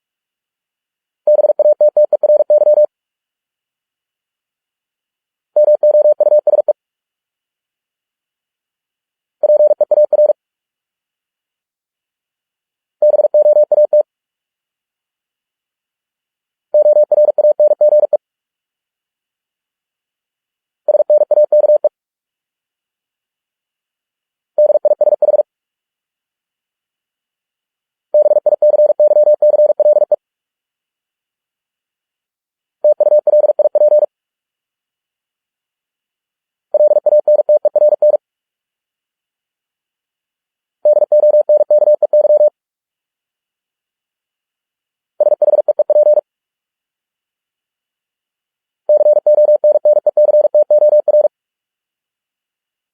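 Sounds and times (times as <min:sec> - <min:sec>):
morse code beeps: 0:16.8 - 0:18.2, 0:28.2 - 0:30.2, 0:33.0 - 0:34.1, 0:36.8 - 0:38.2, 0:40.9 - 0:42.5, 0:45.2 - 0:46.2, 0:48.9 - 0:51.3.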